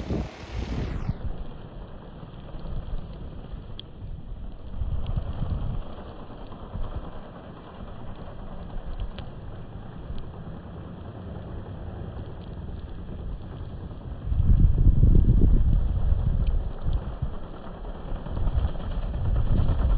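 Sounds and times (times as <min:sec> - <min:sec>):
wind buffeting microphone: 0:00.0 - 0:01.4, 0:04.4 - 0:05.9, 0:14.1 - 0:19.9.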